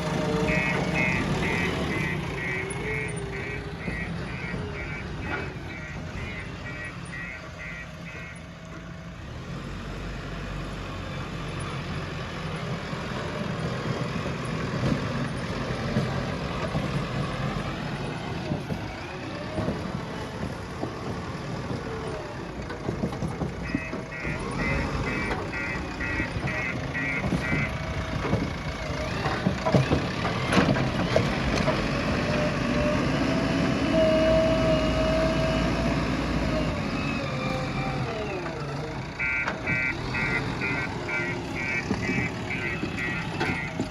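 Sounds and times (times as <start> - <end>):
reversing alarm beeping: 0.0 - 8.4, 23.7 - 29.2, 38.7 - 43.9
backhoe diesel engine running: 0.0 - 43.9
sharp knocks and clanks: 26.4 - 32.4.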